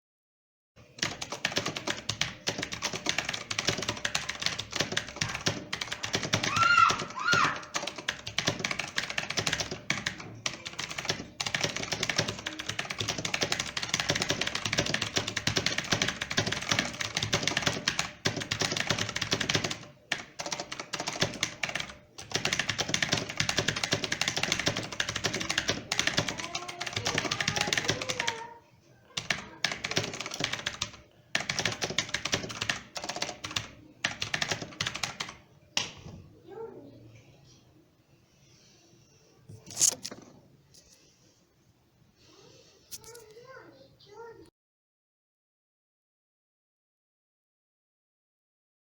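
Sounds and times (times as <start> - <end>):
mechanical keyboard typing: 1.0 - 28.5, 29.2 - 35.9.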